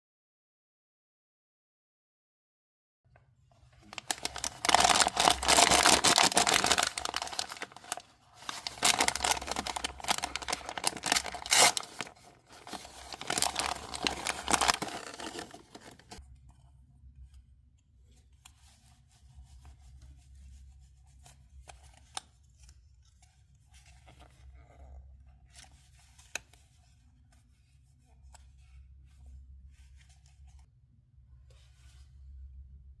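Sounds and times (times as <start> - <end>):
plastic packaging tearing and crinkling: 3.9 - 16.2.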